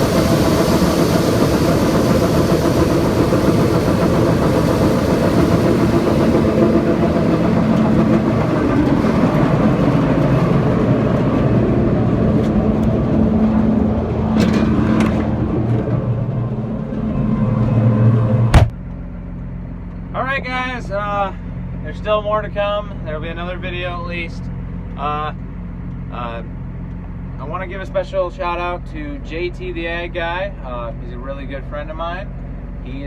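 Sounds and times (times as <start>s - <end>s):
farm machinery engine running: 0.0s - 20.0s.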